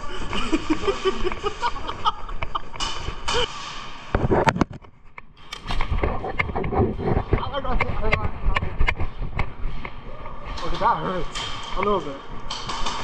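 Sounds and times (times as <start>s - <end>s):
muffled movement: 4.1s - 13.0s
muffled voices: 6.8s - 9.1s.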